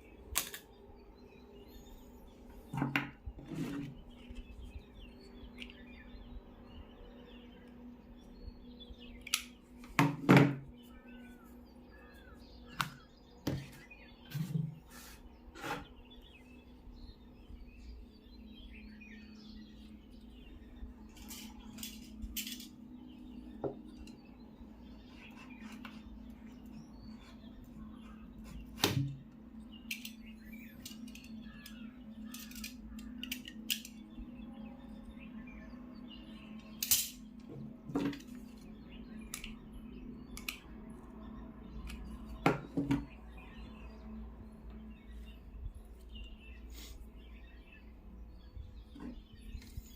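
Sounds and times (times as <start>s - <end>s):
birds chirping faintly: 0.0s - 49.9s
faint steady hum: 0.0s - 49.9s
small parts clicking and knocking: 21.1s - 22.8s, 29.9s - 34.0s, 36.7s - 37.2s.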